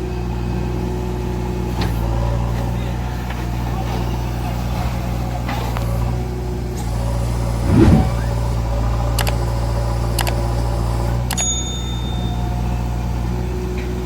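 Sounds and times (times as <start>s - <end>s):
sharp clicks: 9.2s - 9.4s.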